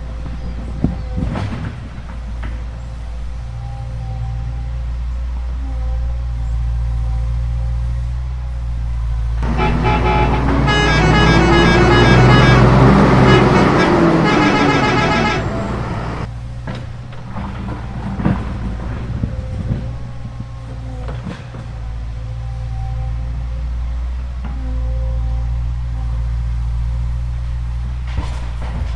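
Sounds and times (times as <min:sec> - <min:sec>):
low engine-like hum: 0:00.0 - 0:28.9
multi-tone horn melody: 0:09.4 - 0:16.3.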